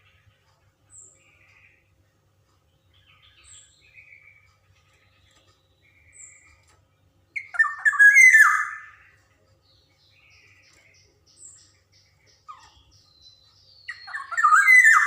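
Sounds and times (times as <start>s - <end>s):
bird singing fluty whistles: 7.4s - 9.0s, 13.8s - 15.0s.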